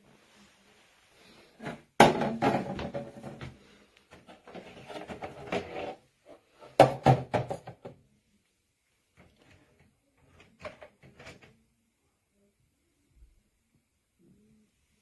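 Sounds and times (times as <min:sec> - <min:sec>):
plastic bins rattling: 0:01.6 - 0:03.6.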